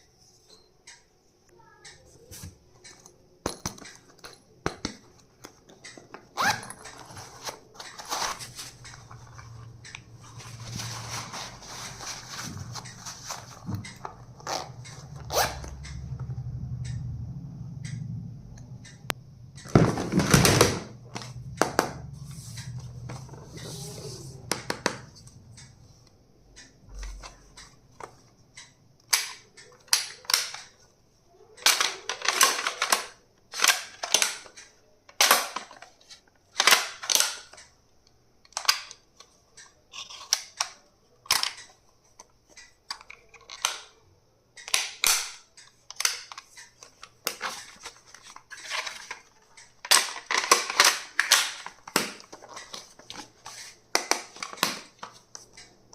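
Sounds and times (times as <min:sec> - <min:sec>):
low steady hum: 0:00.0 - 0:30.0
plastic packaging clicks and rustles: 0:05.4 - 0:14.6, 0:44.7 - 0:55.6.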